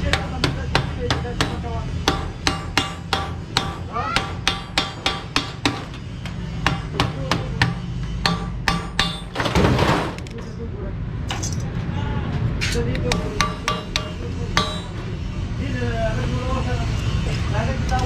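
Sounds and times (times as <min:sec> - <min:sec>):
steady low hum: 0:00.0 - 0:09.5, 0:11.0 - 0:16.0
hammer striking sheet metal: 0:00.0 - 0:09.6, 0:12.9 - 0:15.2.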